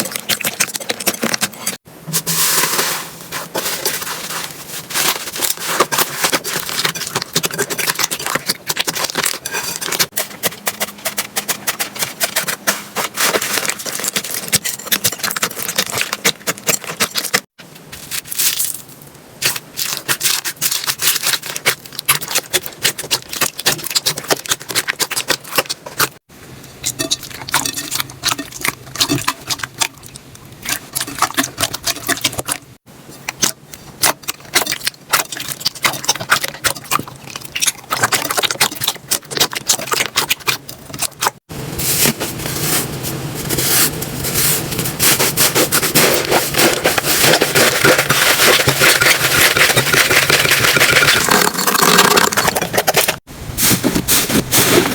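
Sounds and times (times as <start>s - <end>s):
slime clicking and crackling: 19.4s - 26.2s, 45.0s - 53.3s.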